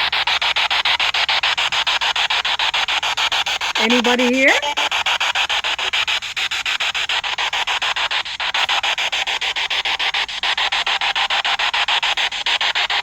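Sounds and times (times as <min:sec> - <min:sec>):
pulsing radio static: 0:03.8 - 0:05.0.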